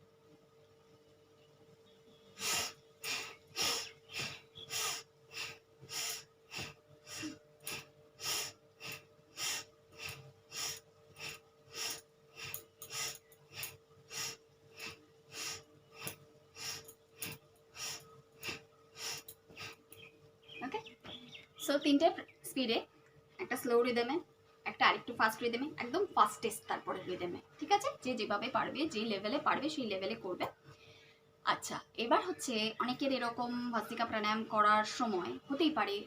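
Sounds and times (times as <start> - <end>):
rapid forceful nose breathing: 2.4 - 20.1.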